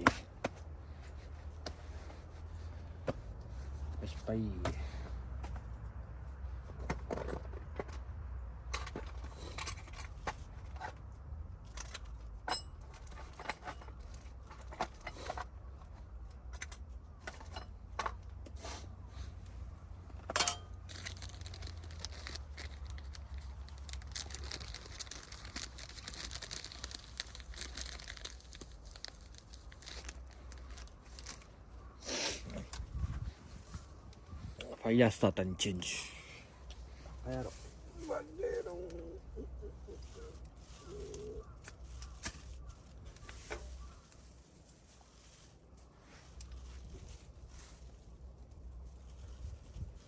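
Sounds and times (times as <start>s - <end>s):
kindling crinkling and snapping: 20.7s - 34.7s, 36.5s - 50.0s.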